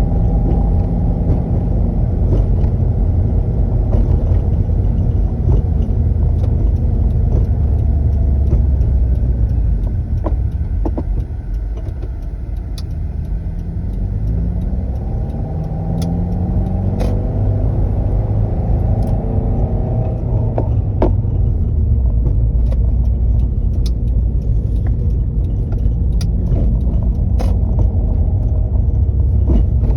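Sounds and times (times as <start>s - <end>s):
car engine rumbling: 0.0s - 29.9s
knocks and clunks: 20.0s - 23.0s, 29.2s - 29.9s.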